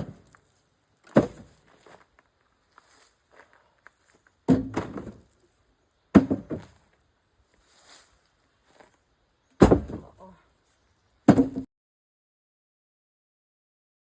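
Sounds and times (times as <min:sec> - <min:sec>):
firewood thrown down: 0:01.0 - 0:02.0, 0:04.4 - 0:05.4, 0:06.1 - 0:06.8, 0:09.6 - 0:10.2, 0:11.3 - 0:11.7.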